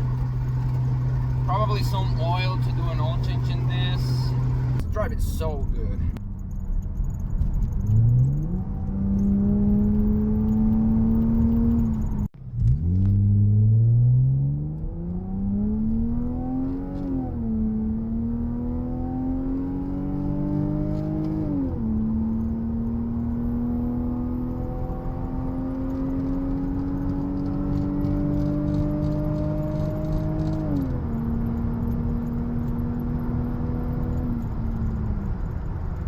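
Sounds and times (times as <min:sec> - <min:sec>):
car engine accelerating: 0:00.0 - 0:36.0.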